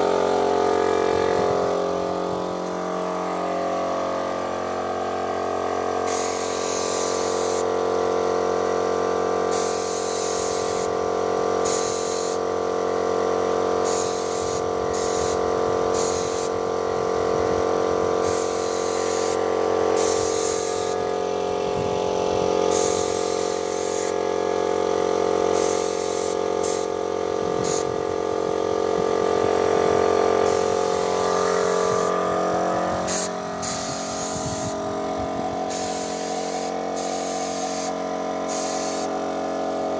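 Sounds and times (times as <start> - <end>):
paint sprayer motor humming: 0.0 - 39.9
spray gun hissing: 5.9 - 7.8, 9.5 - 11.0, 11.6 - 12.5, 13.8 - 16.6, 18.2 - 22.1, 22.7 - 24.3, 25.5 - 27.0, 27.6 - 28.0, 30.4 - 34.8, 35.6 - 39.2.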